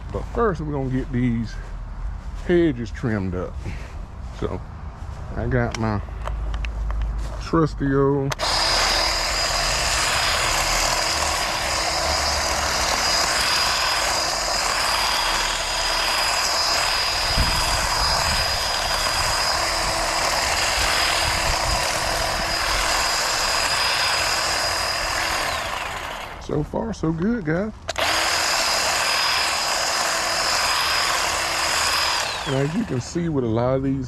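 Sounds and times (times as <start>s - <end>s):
hedge trimmer whining: 8.3s - 34.0s.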